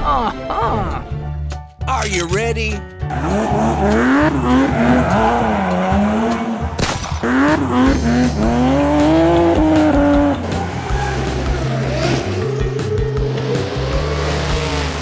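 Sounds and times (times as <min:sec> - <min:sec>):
racing car engine revving: 0:03.1 - 0:15.0.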